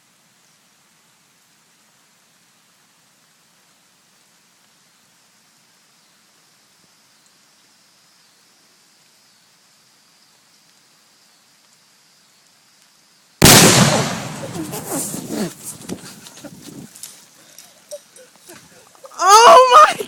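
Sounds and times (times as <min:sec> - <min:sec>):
faint steady hiss: 0:00.0 - 0:20.0
loud explosion blast: 0:13.4 - 0:15.2.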